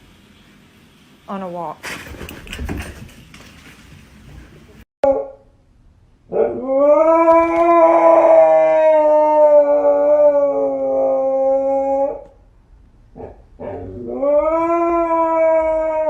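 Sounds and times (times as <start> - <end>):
dog howling: 6.3 - 12.4, 13.2 - 16.0.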